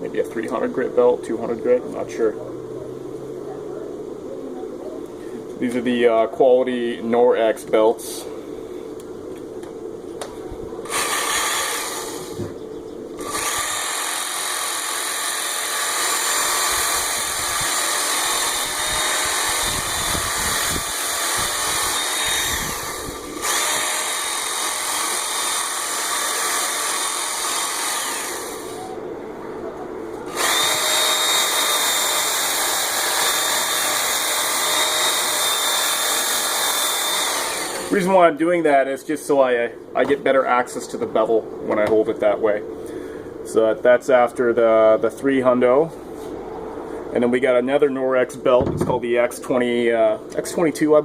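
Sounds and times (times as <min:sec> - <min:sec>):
thin steady whine: 0:00.0 - 0:51.0
belt sharpener grinding steel: 0:10.9 - 0:12.3, 0:13.2 - 0:28.9, 0:30.3 - 0:38.0.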